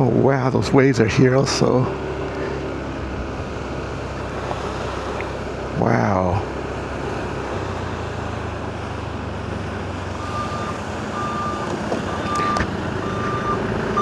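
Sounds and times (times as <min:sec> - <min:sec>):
car driving hum: 0:00.0 - 0:14.0
electronic warning beeper: 0:10.2 - 0:14.0.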